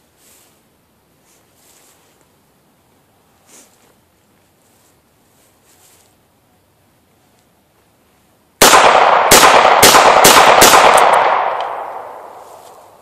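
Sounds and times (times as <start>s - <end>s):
revolver gunshots: 8.6s - 12.9s
gunshot echo: 8.6s - 13.0s.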